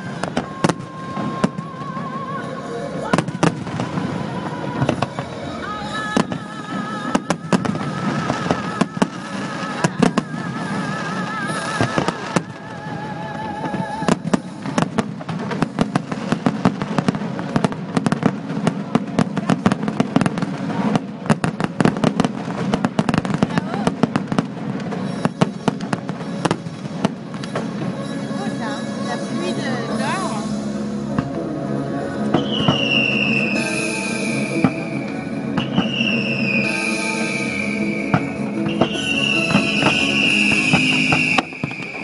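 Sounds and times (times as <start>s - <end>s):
fireworks bangs and crackles: 0.0s - 42.0s
music with wavering held melody: 25.4s - 41.7s.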